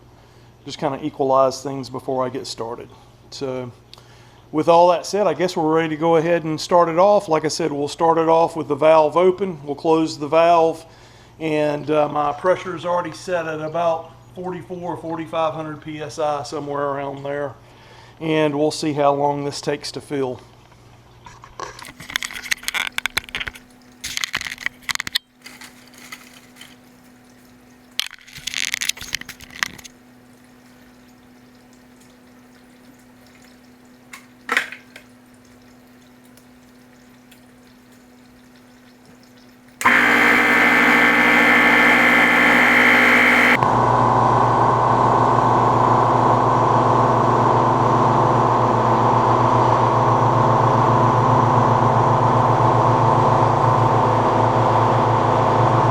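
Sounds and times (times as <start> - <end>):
faint steady hum: 0.0 - 55.9
clicks and handling noises: 21.3 - 27.2, 28.0 - 30.0
air compressor running: 39.8 - 55.9.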